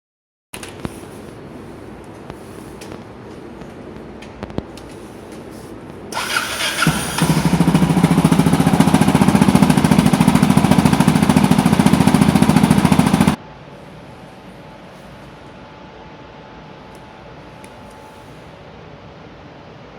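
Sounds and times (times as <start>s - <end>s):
motorcycle engine starting and idling: 6.1s - 13.4s.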